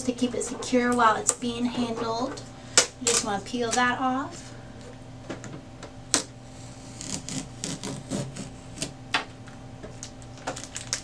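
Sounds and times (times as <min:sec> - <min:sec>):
tape peeling off plastic: 0:06.1 - 0:09.0, 0:09.9 - 0:11.0.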